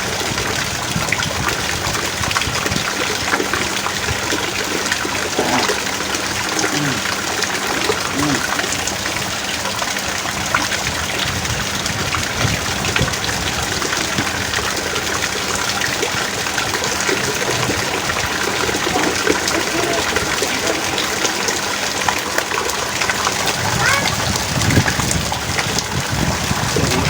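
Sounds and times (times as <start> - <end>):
heavy rain falling: 0.0 - 27.0.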